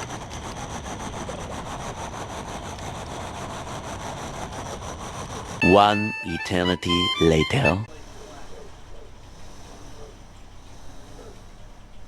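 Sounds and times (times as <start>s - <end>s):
diesel truck engine running: 7.9s - 12.0s.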